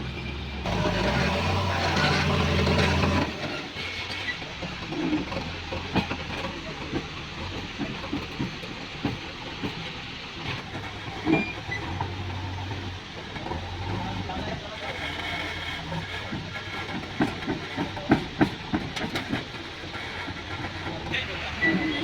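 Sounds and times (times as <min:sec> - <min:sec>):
heavy diesel machinery running: 0:00.0 - 0:22.0
metal clanks and knocks: 0:00.7 - 0:03.8.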